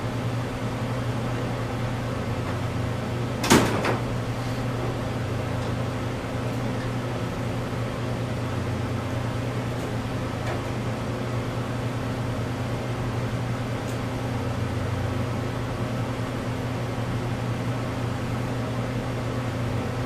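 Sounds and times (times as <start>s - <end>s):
machinery hum: 0.0s - 20.0s.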